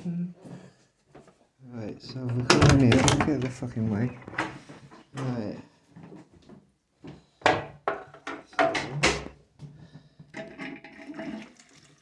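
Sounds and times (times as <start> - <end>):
clatter and rustling: 2.2 - 5.1.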